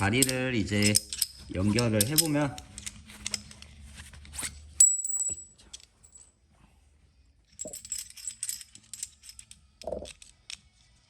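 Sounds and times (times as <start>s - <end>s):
metal pieces clicking together: 0.0s - 3.7s, 7.6s - 10.8s.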